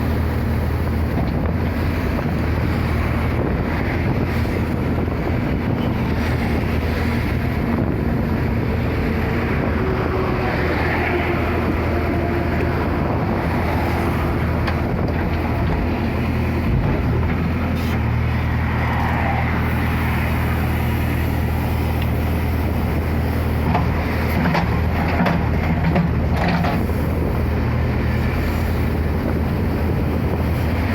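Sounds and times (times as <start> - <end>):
backhoe diesel engine running: 0.0 - 30.9.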